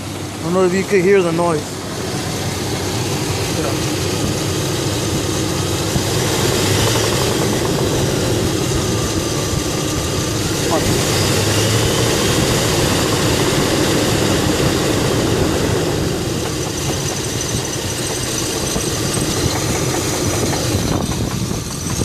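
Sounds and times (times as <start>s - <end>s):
car engine idling: 0.0s - 22.0s
engine knocking: 0.0s - 22.0s.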